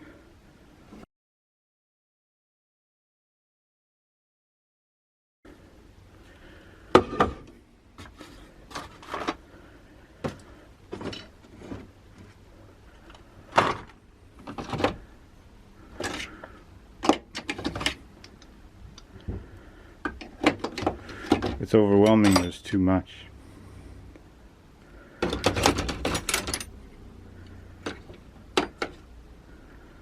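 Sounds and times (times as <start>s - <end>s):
metal tools clinking and knocking: 22.0s - 22.6s, 25.2s - 26.8s.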